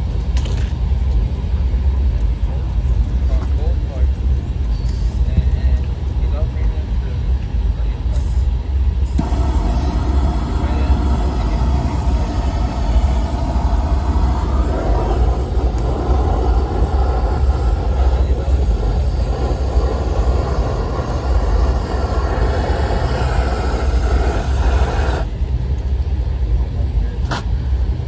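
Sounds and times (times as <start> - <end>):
low rumble: 9.1 - 25.4
torch hissing: 9.1 - 25.4.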